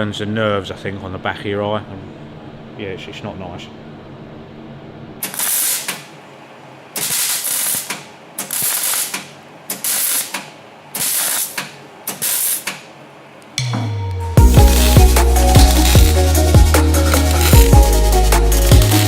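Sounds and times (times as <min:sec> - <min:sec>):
welder crackling hiss: 0:05.2 - 0:06.1, 0:07.0 - 0:12.8, 0:14.4 - 0:19.0.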